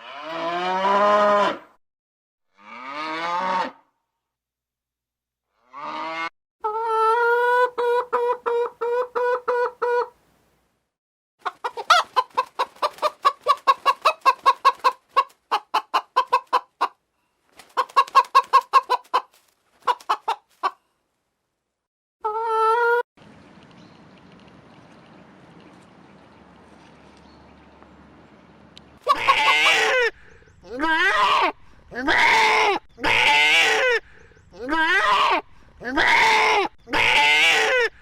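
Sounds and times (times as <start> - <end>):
chickens clucking: 6.6 - 10.2, 11.4 - 17.0, 17.6 - 20.8, 29.0 - 32.1.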